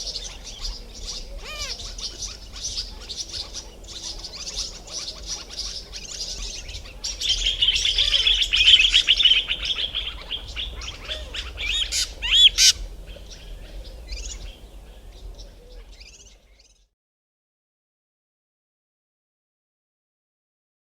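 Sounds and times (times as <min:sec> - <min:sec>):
birds scolding alarm calls: 0:00.0 - 0:16.3
sharp single bird calls: 0:11.6 - 0:12.8.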